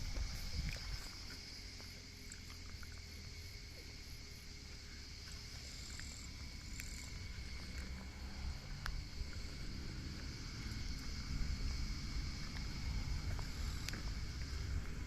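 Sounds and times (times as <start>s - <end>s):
insects chorus droning: 0.0s - 15.0s
low rumble: 6.1s - 15.0s
light ticks: 8.8s - 9.0s.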